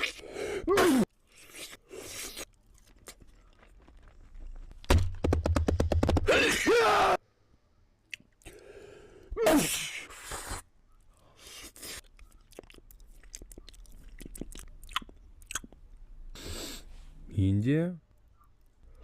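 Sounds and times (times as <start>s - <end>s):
person sneezing: 0.6s - 1.1s, 9.4s - 10.6s
clicking chewing mouth sounds: 8.1s - 8.6s, 11.7s - 15.9s.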